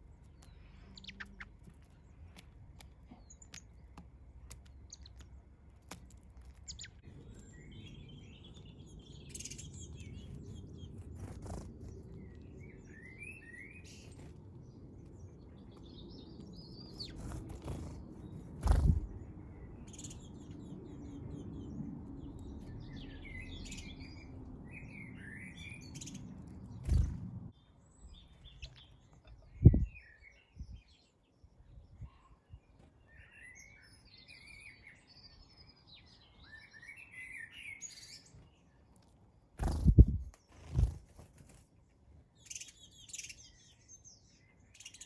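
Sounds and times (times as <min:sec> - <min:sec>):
garden birds chirping: 0:00.0 - 0:45.0.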